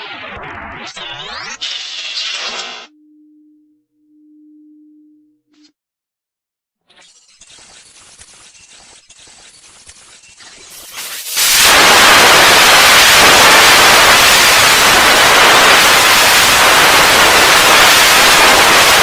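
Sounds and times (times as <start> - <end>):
loud static hiss: 10.8 - 19.0.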